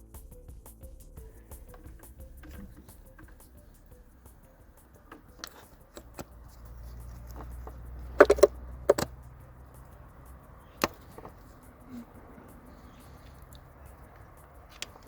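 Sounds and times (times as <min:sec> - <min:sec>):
tools clicking and knocking: 0:01.7 - 0:09.9, 0:10.6 - 0:11.8.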